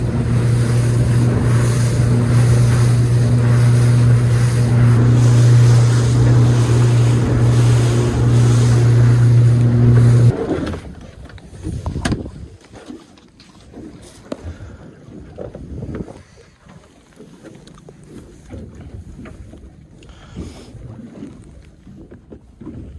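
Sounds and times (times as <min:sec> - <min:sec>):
rushing water noise: 0:00.0 - 0:10.4
motorboat engine running: 0:00.0 - 0:12.2, 0:13.8 - 0:22.9.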